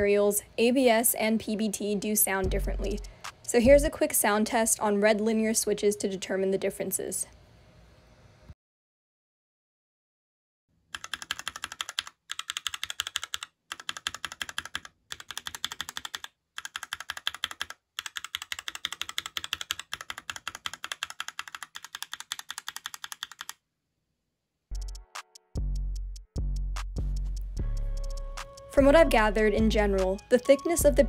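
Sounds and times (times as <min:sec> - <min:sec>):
mechanical keyboard typing: 0:10.9 - 0:23.6.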